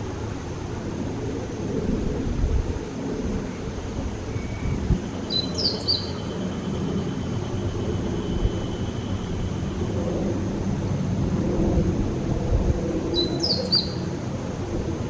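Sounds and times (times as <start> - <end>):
bird chirps: 4.3 - 9.4, 13.2 - 14.0.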